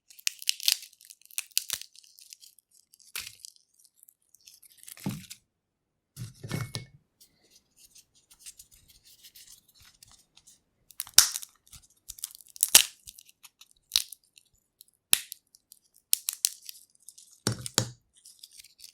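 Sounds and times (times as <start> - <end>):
peanut shells cracking: 0.1 - 5.0, 10.9 - 18.9
papery shells rustling: 15.7 - 18.9.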